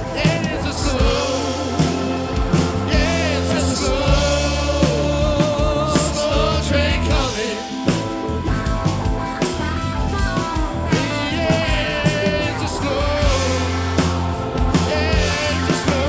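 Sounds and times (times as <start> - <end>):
drum hits: 0.0 - 9.3
live rock band playing: 0.0 - 16.0.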